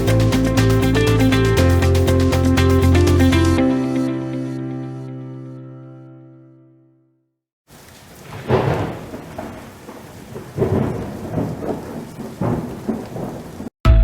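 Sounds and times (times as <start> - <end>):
steady rain: 7.7 - 13.7
thunder rumbling: 7.7 - 13.7.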